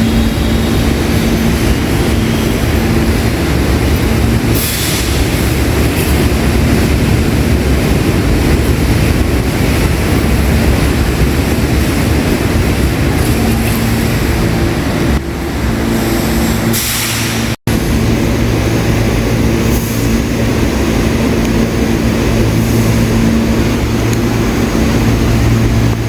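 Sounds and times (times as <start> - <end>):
subway train rumbling: 0.0 - 26.0
sharp hiss: 4.5 - 5.4, 15.9 - 17.6.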